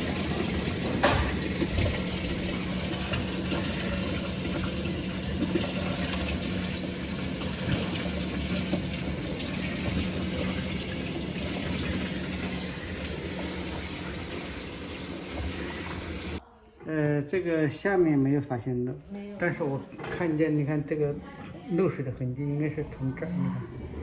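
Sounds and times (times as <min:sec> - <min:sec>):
water filling washing machine: 0:00.0 - 0:16.4.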